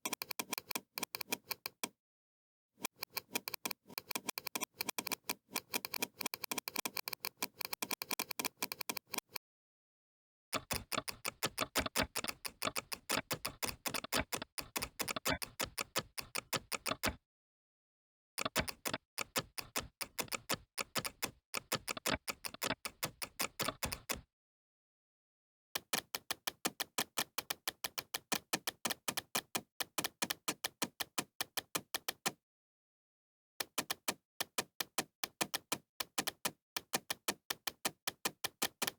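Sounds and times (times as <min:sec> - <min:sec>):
rapid mouse-click sound effect: 0:00.0 - 0:02.0, 0:02.8 - 0:09.4, 0:10.5 - 0:17.2, 0:18.4 - 0:24.2, 0:25.8 - 0:32.4.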